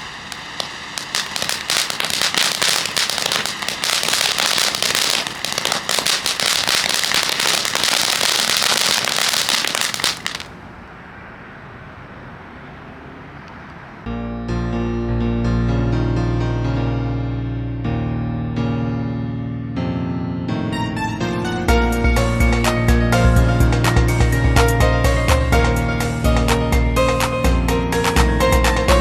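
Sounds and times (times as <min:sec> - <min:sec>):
firework hissing and crackling: 0:00.0 - 0:10.5.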